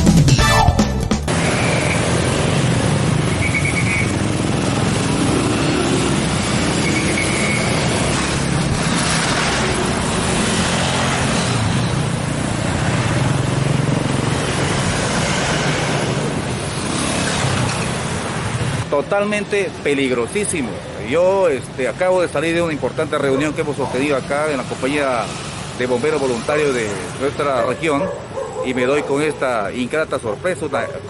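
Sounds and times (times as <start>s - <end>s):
street traffic din: 0.0s - 31.0s
short high beeps: 0.3s - 1.2s.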